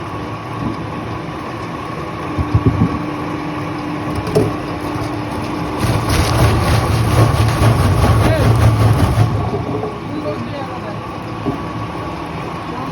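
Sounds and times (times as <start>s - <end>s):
wood-processing machinery running: 0.0s - 12.9s
pulsing low rumble: 2.2s - 3.4s
wood knocks: 2.4s - 3.0s.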